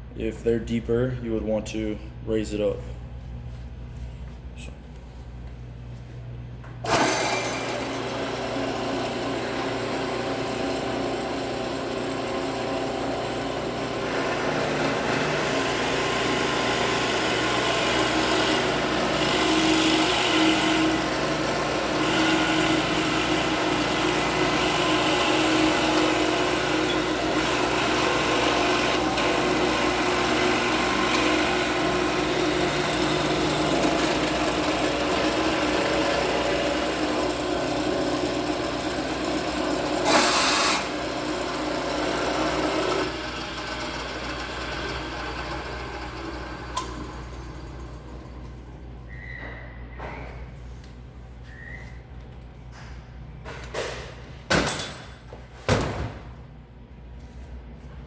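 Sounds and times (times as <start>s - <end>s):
drill press boring into wood: 6.9s - 47.1s.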